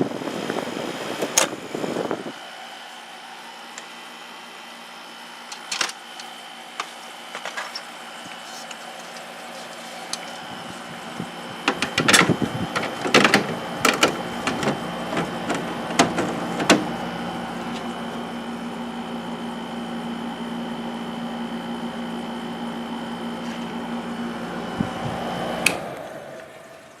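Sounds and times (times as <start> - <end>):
air conditioner humming: 0.0 - 27.0
clicks and rattles: 5.5 - 9.3, 11.6 - 16.9.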